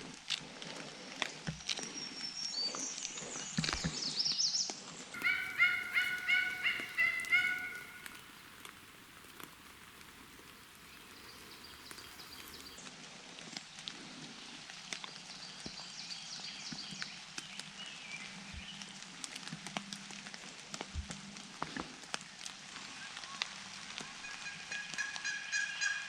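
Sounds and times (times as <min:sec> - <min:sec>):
raindrops ticking: 0:05.2 - 0:12.8
rain hiss: 0:05.2 - 0:24.4.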